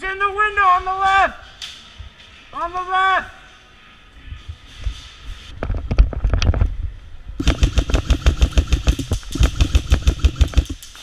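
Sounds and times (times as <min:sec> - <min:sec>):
airsoft gun firing bursts: 0:07.4 - 0:11.0.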